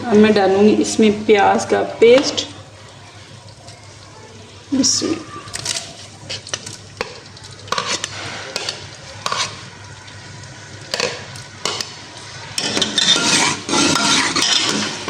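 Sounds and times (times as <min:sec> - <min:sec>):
onion paste sizzling in oil: 0:00.0 - 0:15.0
spoon scraping a pan: 0:05.8 - 0:09.8, 0:10.9 - 0:15.0.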